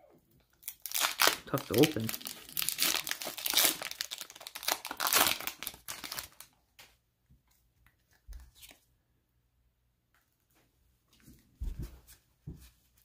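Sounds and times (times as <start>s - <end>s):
foil wrapper crinkling and tearing: 0.5s - 6.6s.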